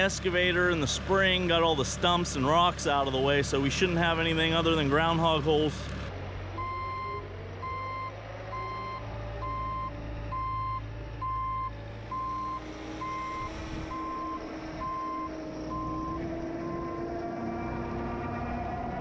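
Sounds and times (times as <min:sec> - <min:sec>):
diesel engine running: 0:00.0 - 0:19.0
rising hum: 0:05.9 - 0:19.0
backup alarm beeping: 0:06.6 - 0:17.0.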